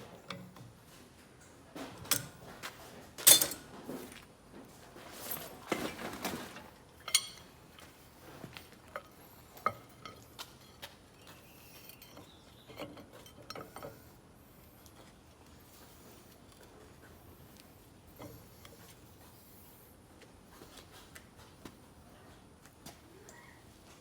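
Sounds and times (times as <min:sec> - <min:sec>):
metal tools clinking: 0:03.2 - 0:03.7, 0:05.0 - 0:06.1, 0:07.0 - 0:07.9, 0:09.0 - 0:14.1.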